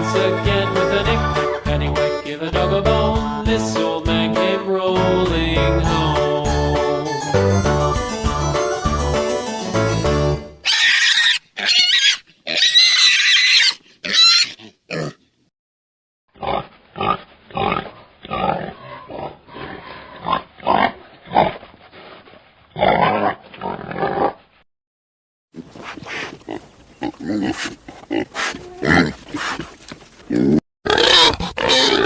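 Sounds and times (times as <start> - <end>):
pigs squealing: 10.6 - 15.2, 16.4 - 21.5, 30.9 - 32.0
pig grunting: 16.4 - 21.6, 22.8 - 24.4, 25.6 - 32.0.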